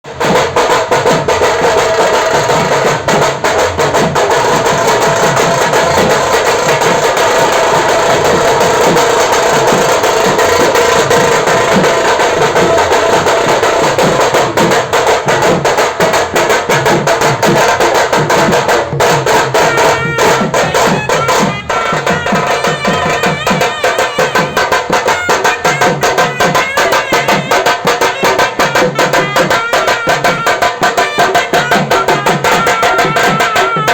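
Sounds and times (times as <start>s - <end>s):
hand drum rhythm: 0.0s - 33.9s.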